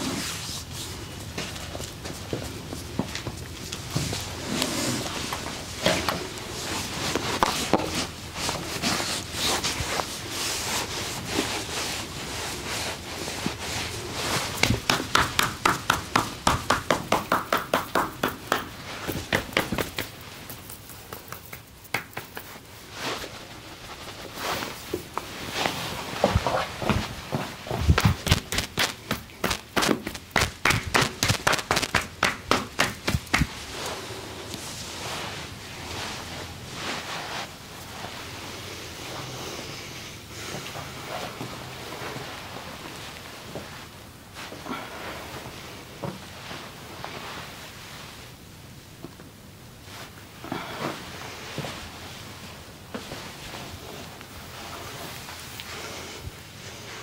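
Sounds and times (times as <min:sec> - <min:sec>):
hands rubbing skin: 0:00.1 - 0:35.4
tapping massage slaps: 0:14.6 - 0:22.6, 0:27.7 - 0:33.6.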